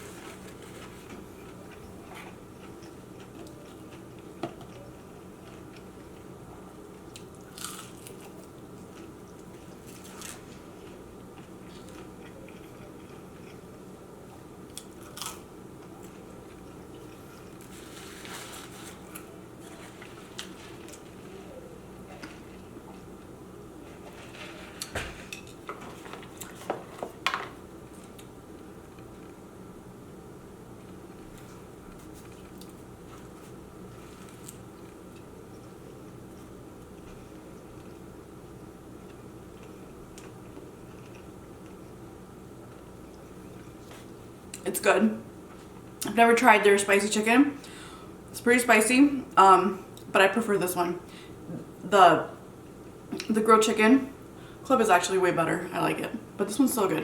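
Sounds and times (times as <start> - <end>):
person chewing food: 0.0 - 6.3, 6.9 - 23.4, 39.0 - 44.6
low background hum: 0.0 - 57.0
food packaging crackling: 17.0 - 22.8.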